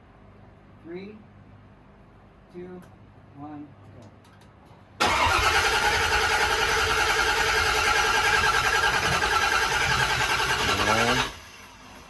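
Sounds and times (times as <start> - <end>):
starter motor cranking engine: 5.0 - 11.9.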